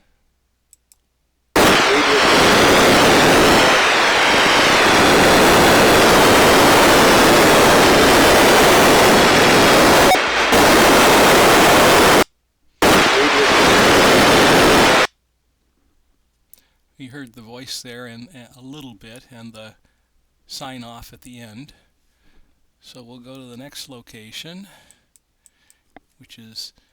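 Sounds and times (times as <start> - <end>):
faint voice: 1.6 - 4.1, 12.8 - 15.1
radio static hiss: 1.6 - 12.2, 12.8 - 15.1.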